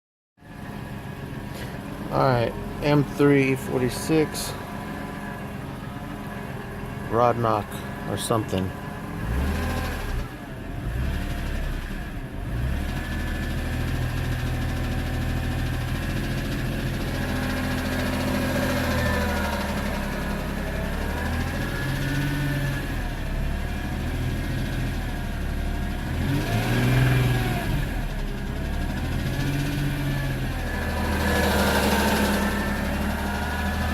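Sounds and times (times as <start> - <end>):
car engine idling and revving: 0.4 - 33.9
engine knocking noise: 9.2 - 33.9.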